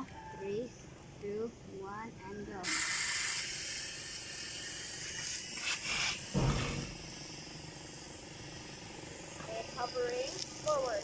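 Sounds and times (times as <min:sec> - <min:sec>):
toy helicopter whirring: 0:02.6 - 0:11.0
short low thump: 0:06.4 - 0:07.0.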